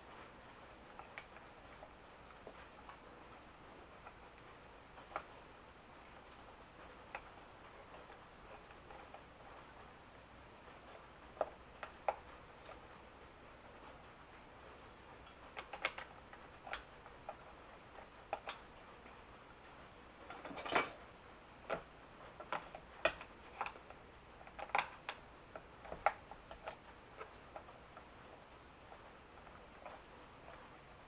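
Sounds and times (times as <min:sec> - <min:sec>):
hand tools clicking and tapping: 0:15.2 - 0:18.8, 0:21.6 - 0:30.7.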